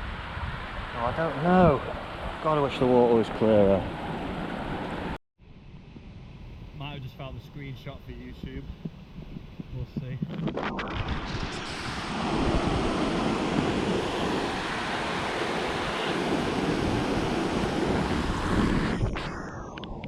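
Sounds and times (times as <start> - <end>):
waterfall rushing: 11.7 - 18.3.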